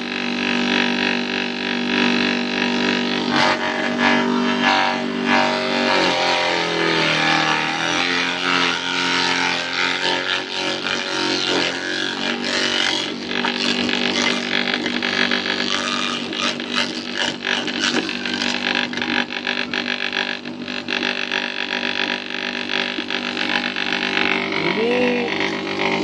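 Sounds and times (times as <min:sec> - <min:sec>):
chopper machine motor droning: 0:00.0 - 0:26.0.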